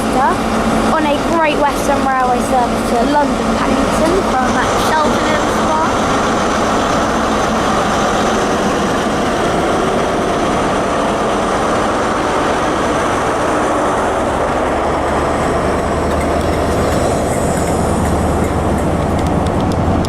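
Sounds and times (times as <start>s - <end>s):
train diesel engine under load: 0.0s - 20.0s
train wheel clicks: 14.3s - 20.0s.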